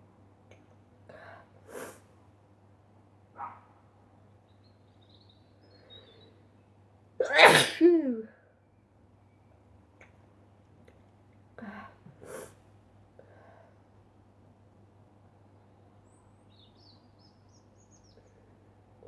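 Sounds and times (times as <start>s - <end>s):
person sneezing: 7.2s - 8.1s.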